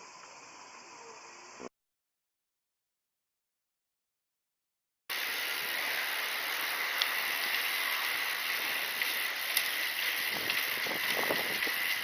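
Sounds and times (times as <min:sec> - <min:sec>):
bike tyres rolling: 0:05.1 - 0:12.0.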